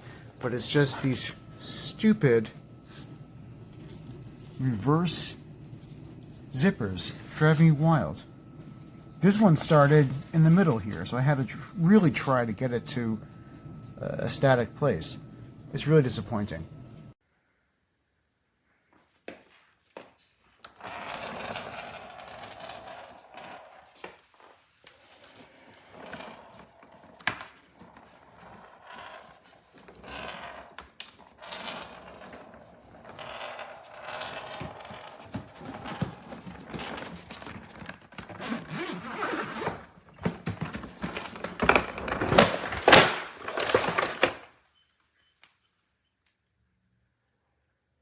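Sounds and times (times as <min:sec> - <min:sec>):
suitcase zipper rasping: 0:20.7 - 0:24.0, 0:25.4 - 0:40.0.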